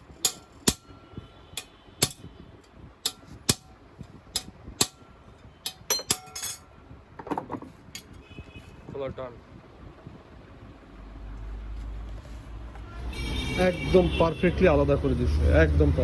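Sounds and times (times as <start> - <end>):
hand tools tapping on metal chain: 5.7 - 6.6.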